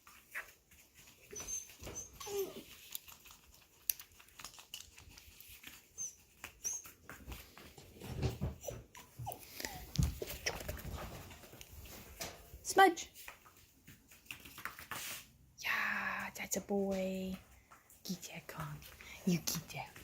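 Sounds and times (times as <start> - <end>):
puppy whining: 0.2 - 3.5, 5.2 - 11.3.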